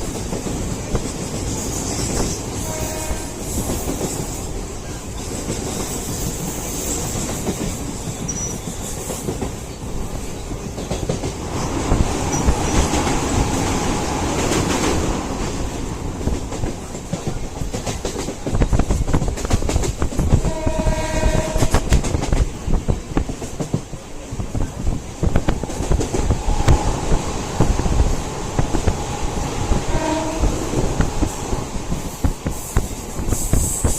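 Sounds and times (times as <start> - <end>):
train rumbling on track: 0.0 - 33.9
train horn: 2.5 - 3.9, 20.3 - 22.0, 29.7 - 31.1.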